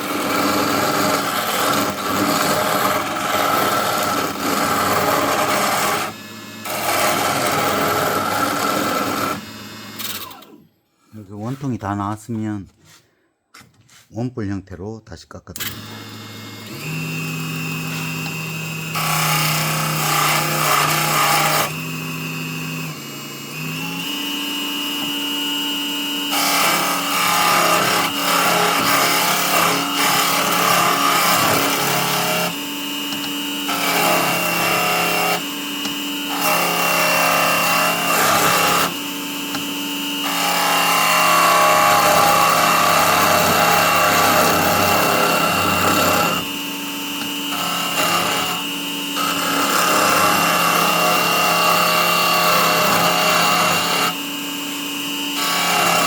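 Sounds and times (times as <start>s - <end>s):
turning tool scraping wood: 11.0s - 14.3s, 26.3s - 46.6s, 47.2s - 54.2s
lathe motor hum: 24.0s - 56.0s.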